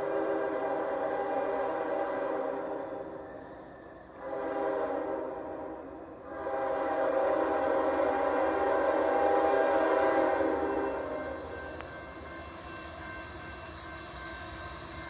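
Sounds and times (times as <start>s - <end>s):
locomotive air horn chord: 0.0s - 2.8s, 4.2s - 12.4s.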